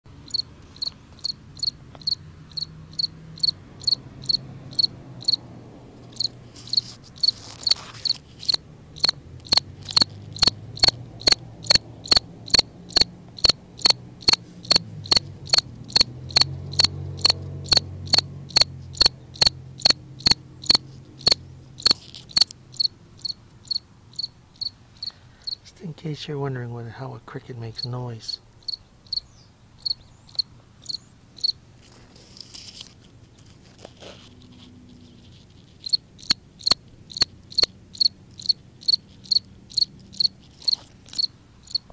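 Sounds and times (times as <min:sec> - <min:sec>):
cricket chirping: 0:00.2 - 0:25.6, 0:28.3 - 0:31.6, 0:35.1 - 0:41.9
short rustle: 0:06.3 - 0:08.6, 0:31.7 - 0:35.9.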